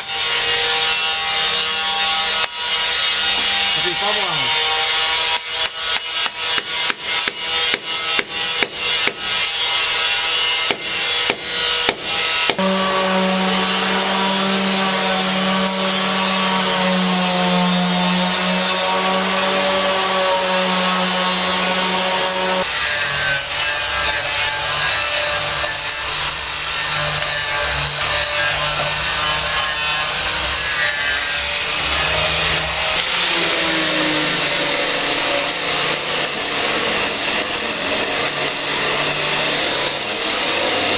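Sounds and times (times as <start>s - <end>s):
power tool on wood: 0.0s - 40.9s.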